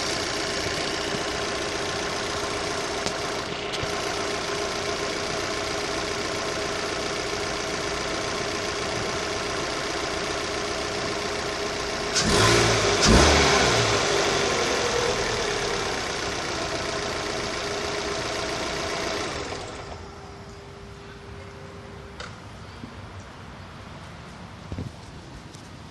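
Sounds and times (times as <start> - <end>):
car engine idling and revving: 0.0 - 21.3.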